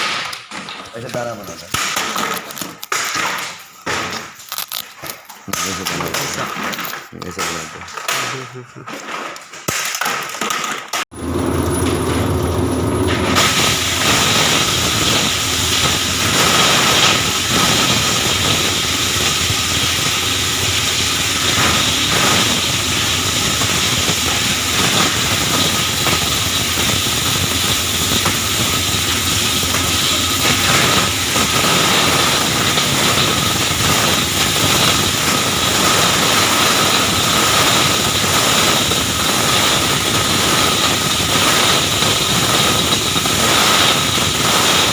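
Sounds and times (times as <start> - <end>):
plastic grinder crunching plastic: 0.0 - 44.9
motor hum: 11.1 - 44.9.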